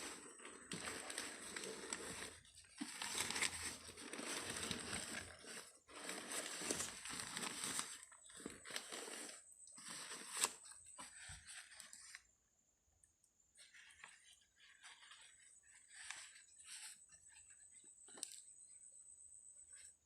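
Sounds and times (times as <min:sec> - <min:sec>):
packaging crinkling: 0:00.0 - 0:12.2.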